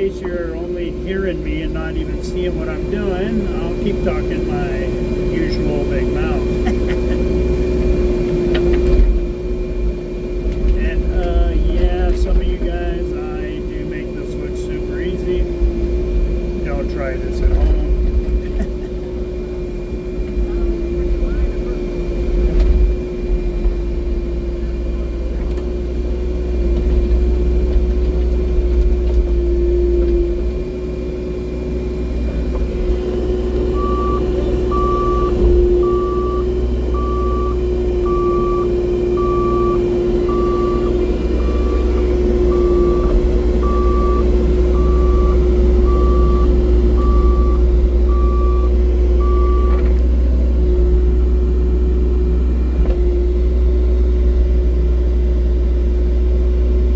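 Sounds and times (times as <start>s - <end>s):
excavator diesel engine rumbling: 0.0s - 56.9s
reversing alarm beeping: 33.1s - 50.1s.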